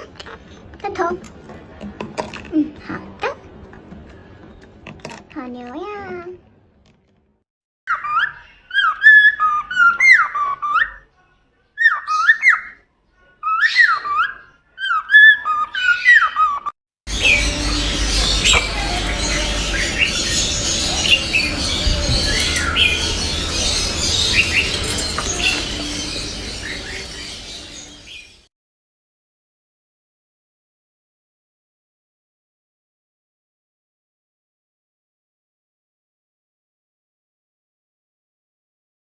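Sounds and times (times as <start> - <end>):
bird whistling and chirping: 7.9 - 11.0, 13.4 - 28.4.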